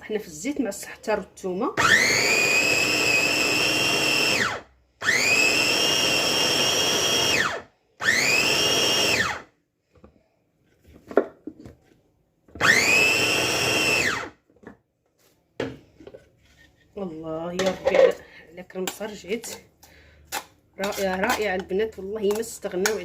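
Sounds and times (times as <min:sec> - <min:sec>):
electric blender grinding: 0:01.8 - 0:09.4, 0:12.6 - 0:14.4.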